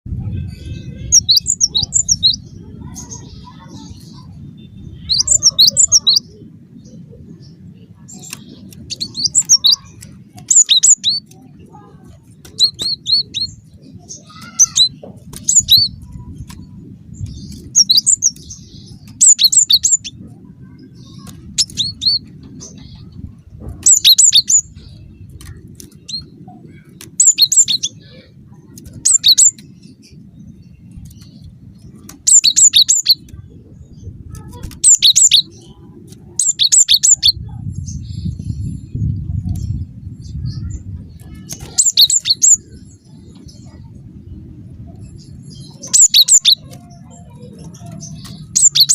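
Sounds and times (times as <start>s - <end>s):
steady low rumble: 0.0s - 48.9s
bird whistling song: 1.0s - 3.3s, 4.1s - 6.3s, 8.2s - 9.9s, 10.5s - 11.3s, 17.2s - 23.1s, 23.8s - 24.8s, 27.2s - 28.0s, 28.9s - 29.6s, 32.2s - 33.3s, 34.8s - 35.5s, 36.4s - 38.9s, 41.5s - 42.8s, 45.6s - 48.9s
bird singing sharp high notes: 45.6s - 46.8s.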